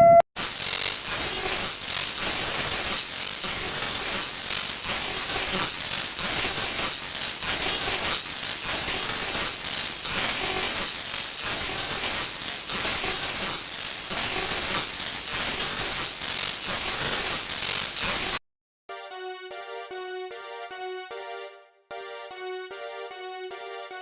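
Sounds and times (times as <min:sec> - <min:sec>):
harsh static hiss: 0:00.4 - 0:18.4.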